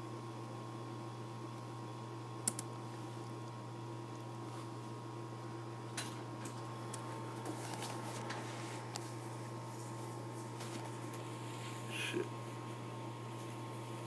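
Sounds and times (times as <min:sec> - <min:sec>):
low electrical hum: 0:00.0 - 0:14.0
computer mouse clicks: 0:02.4 - 0:02.7.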